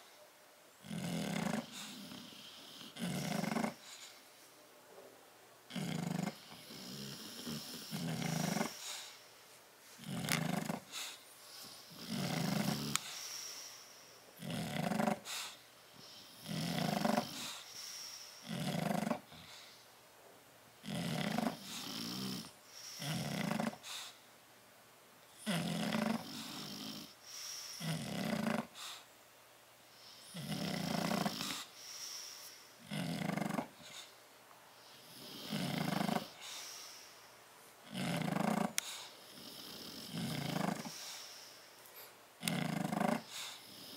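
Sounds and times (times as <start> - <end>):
dog snoring: 0.8 - 4.1, 5.7 - 9.2, 10.0 - 13.7, 14.4 - 19.8, 20.8 - 24.2, 25.4 - 29.0, 30.0 - 34.1, 34.9 - 37.0, 37.8 - 41.4, 42.4 - 43.9.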